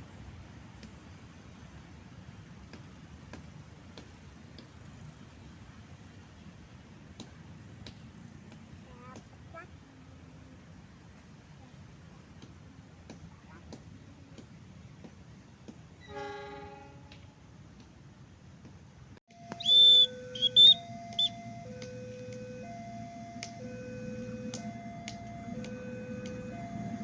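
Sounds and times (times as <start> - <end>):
two-tone electronic warning signal: 19.3 - 27.0
shrill whistle blown: 19.4 - 21.5.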